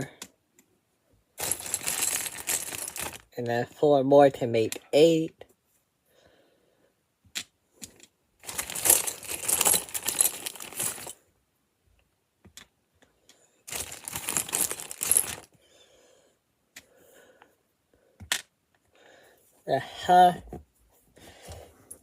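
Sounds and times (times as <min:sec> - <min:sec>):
plastic pieces clattering: 0:01.4 - 0:03.3, 0:08.4 - 0:11.2, 0:13.7 - 0:15.5.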